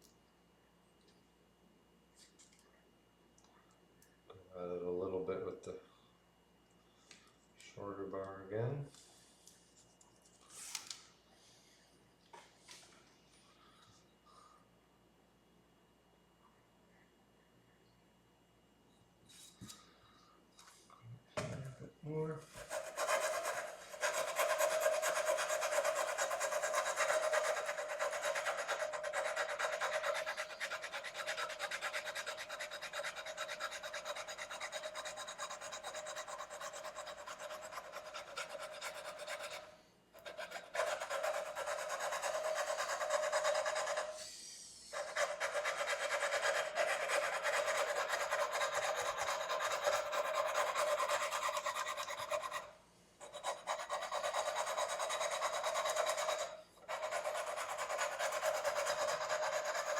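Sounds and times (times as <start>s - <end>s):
abrasive paper rasping on frets: 22.6s - 39.6s.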